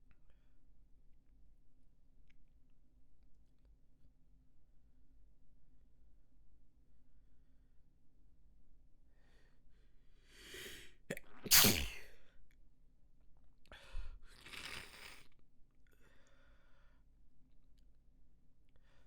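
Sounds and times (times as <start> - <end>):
drawn-in breath: 10.2 - 11.0
person sneezing: 10.4 - 12.2.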